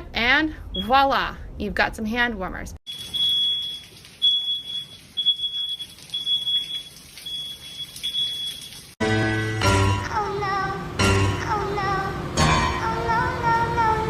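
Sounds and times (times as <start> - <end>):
high electronic alarm beeps: 2.9 - 8.8
music: 9.0 - 14.0.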